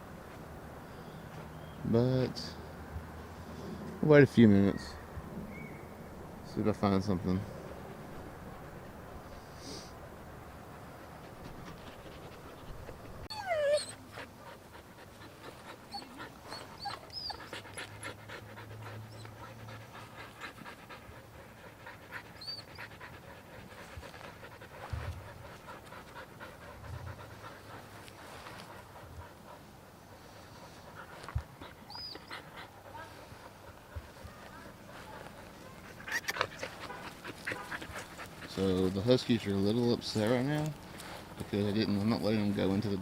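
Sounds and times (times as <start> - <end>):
dogs panting: 0.2 - 43.0
dogs whining and whimpering: 12.8 - 14.6, 15.8 - 19.8, 22.4 - 23.0, 31.6 - 32.7, 35.8 - 36.7.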